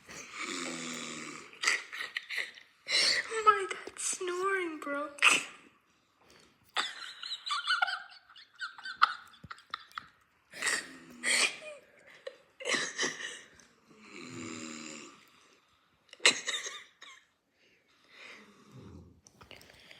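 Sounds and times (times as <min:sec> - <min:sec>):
man snoring: 0:00.2 - 0:01.6, 0:13.9 - 0:15.2.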